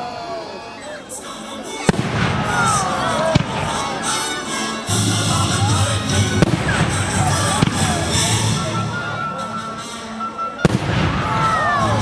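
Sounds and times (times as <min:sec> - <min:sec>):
fireworks bangs: 0:01.9 - 0:04.2, 0:06.2 - 0:08.6, 0:10.6 - 0:12.0
music with bass: 0:04.8 - 0:12.0.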